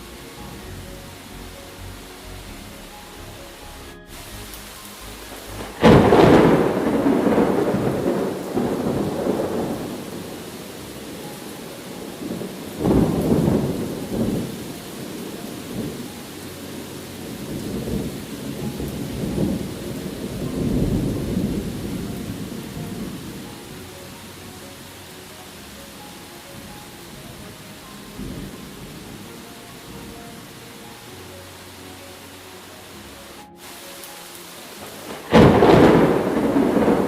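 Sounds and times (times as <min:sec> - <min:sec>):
steady rain: 0:00.0 - 0:37.0
thunder clap and rumble: 0:05.2 - 0:16.1, 0:17.2 - 0:23.8, 0:34.8 - 0:37.0.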